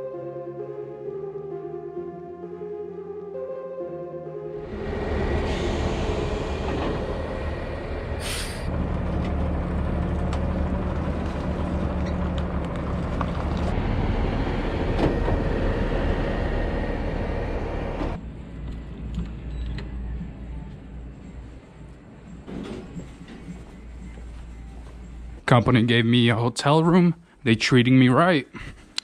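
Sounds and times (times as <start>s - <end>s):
truck engine drone: 4.5s - 25.4s
road rumble: 4.6s - 25.4s
air brake hiss: 4.8s - 8.7s.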